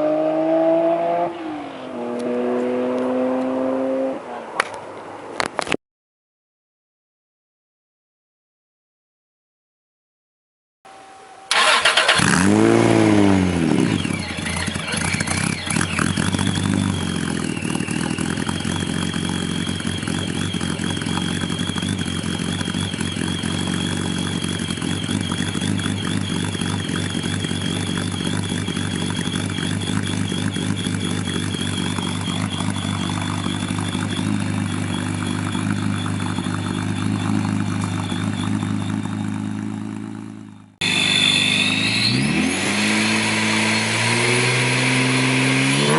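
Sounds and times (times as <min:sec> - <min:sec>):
car engine starting and idling: 0:11.5 - 0:45.9
thin high whine: 0:13.9 - 0:45.8.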